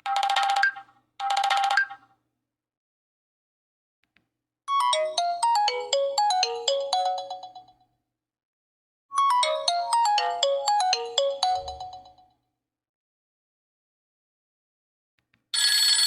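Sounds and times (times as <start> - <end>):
phone ringtone tune: 4.7 - 7.7, 9.2 - 12.3.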